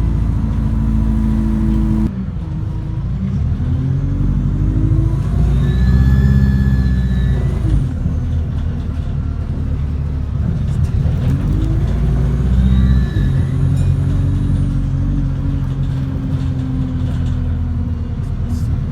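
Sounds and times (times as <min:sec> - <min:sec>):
rising and falling whine: 0:00.0 - 0:02.1, 0:04.6 - 0:07.8
bus engine drone: 0:00.0 - 0:18.9.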